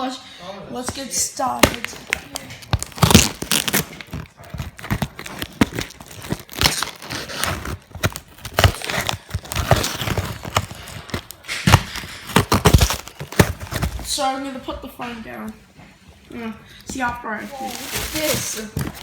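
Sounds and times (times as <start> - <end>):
packaging being torn open: 1.6 - 14.1.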